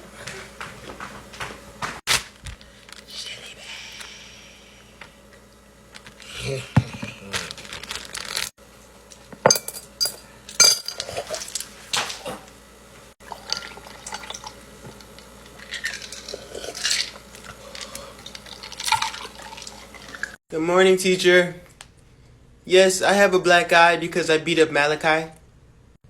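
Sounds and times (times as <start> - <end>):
kitchenware clinking: 9.4 - 11.7
liquid sounds: 13.2 - 20.4.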